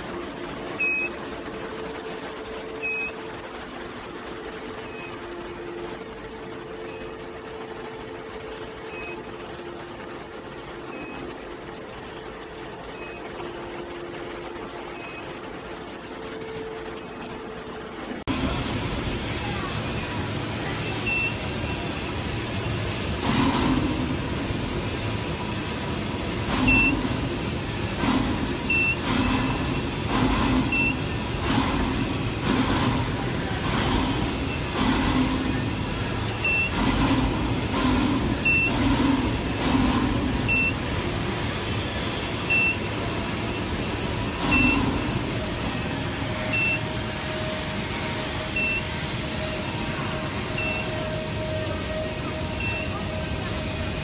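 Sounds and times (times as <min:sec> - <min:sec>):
machinery hum: 0:00.0 - 0:54.0
short high beeps: 0:26.4 - 0:32.6, 0:33.7 - 0:40.9, 0:41.6 - 0:45.8, 0:46.4 - 0:46.9, 0:48.5 - 0:49.0, 0:50.4 - 0:54.0
short high beep: 0:26.5 - 0:27.2, 0:40.4 - 0:40.8, 0:42.4 - 0:43.6, 0:46.4 - 0:46.9, 0:48.6 - 0:49.0, 0:50.4 - 0:51.0.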